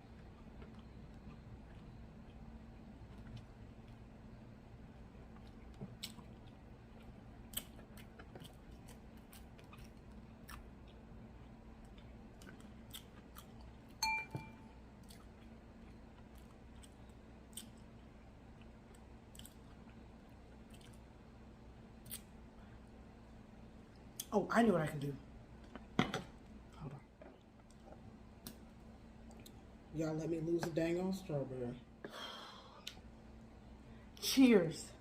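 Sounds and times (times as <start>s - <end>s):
chewing and crunching food: 0.0s - 14.0s, 14.8s - 23.1s, 23.7s - 29.8s
faint low hum: 0.0s - 35.0s
short ringing clink: 14.0s - 14.7s.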